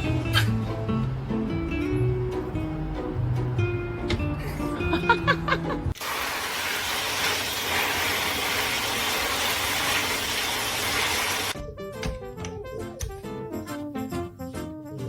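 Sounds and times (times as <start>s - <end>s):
background music: 0.0s - 6.0s, 11.6s - 15.0s.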